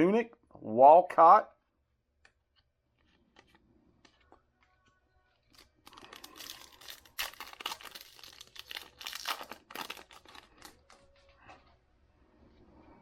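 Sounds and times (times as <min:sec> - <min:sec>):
foil wrapper tearing and crinkling: 0:05.5 - 0:11.0.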